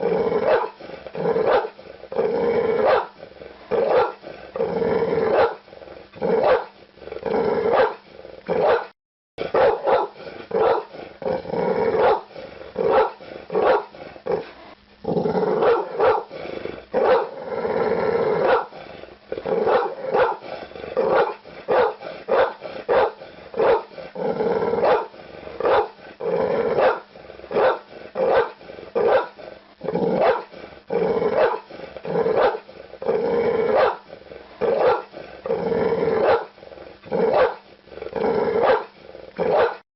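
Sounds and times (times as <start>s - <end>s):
dog barking: 0.5s - 0.8s, 1.4s - 1.8s, 2.8s - 3.2s, 3.8s - 4.2s, 5.3s - 5.6s, 6.4s - 6.7s, 7.7s - 8.0s, 8.6s - 8.9s, 9.5s - 10.9s, 12.0s - 12.3s, 12.9s - 13.9s, 15.6s - 16.3s, 17.0s - 17.4s, 18.4s - 18.7s, 19.6s - 20.4s, 21.0s - 23.9s, 24.8s - 26.0s, 26.8s - 29.4s, 30.2s - 30.5s, 31.4s - 31.7s, 32.4s - 32.6s, 33.7s - 34.0s, 34.7s - 35.1s, 36.2s - 36.5s, 37.3s - 37.6s, 38.6s - 38.9s, 39.5s - 39.8s.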